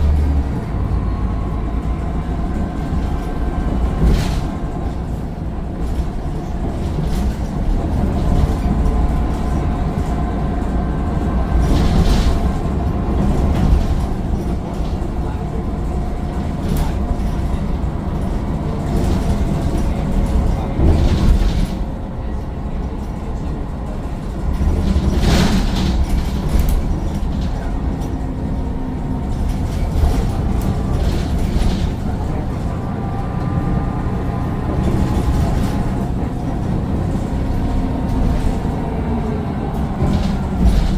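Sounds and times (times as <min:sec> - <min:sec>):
bus engine and road rumble: 0:00.0 - 0:40.9
rattles and knocks: 0:24.2 - 0:32.6, 0:39.7 - 0:40.9.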